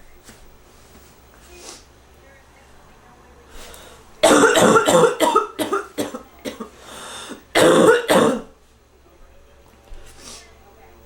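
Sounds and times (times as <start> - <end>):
person breathing: 3.5 - 4.1, 6.7 - 7.5
person coughing: 4.2 - 6.7, 7.6 - 8.5.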